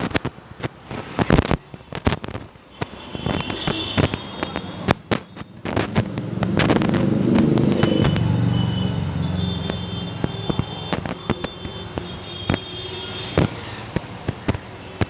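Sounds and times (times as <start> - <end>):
firecrackers cracking: 0.0 - 15.0
vehicle engine passing: 5.6 - 11.4.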